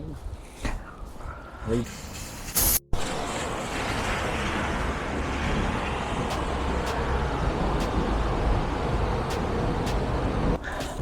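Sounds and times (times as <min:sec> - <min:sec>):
wind buffeting microphone: 0:03.0 - 0:11.0.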